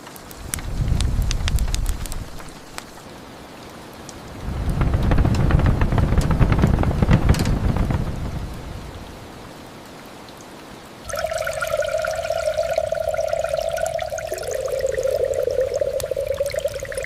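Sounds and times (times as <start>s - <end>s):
pitched hum with crackling: 0.0s - 3.1s, 11.0s - 17.0s
heavy rain: 0.0s - 17.0s
thunder rumble: 4.5s - 9.3s.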